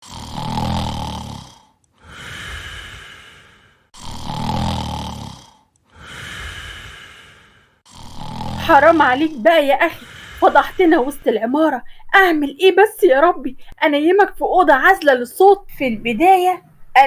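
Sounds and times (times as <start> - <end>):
man snoring: 0.0 - 11.2
hissing breath: 2.0 - 4.6, 5.8 - 8.7, 9.9 - 11.2, 11.8 - 12.1.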